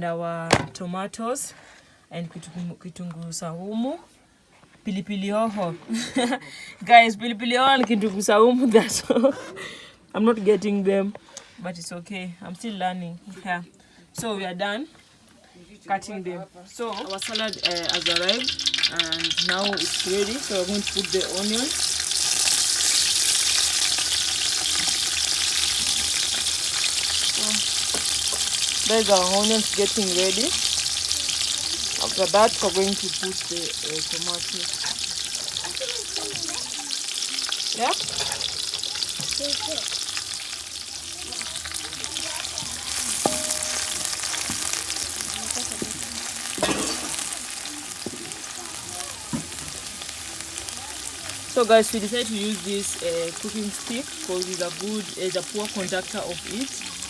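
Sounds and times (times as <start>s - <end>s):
onions sizzling in a pan: 16.7s - 57.0s
stick knocking against pot: 43.1s - 44.9s.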